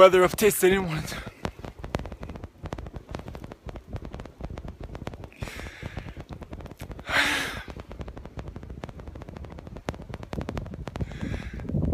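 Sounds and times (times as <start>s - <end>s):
small clicks and crackles: 0.0s - 11.9s
person exhaling breathily: 7.0s - 7.7s.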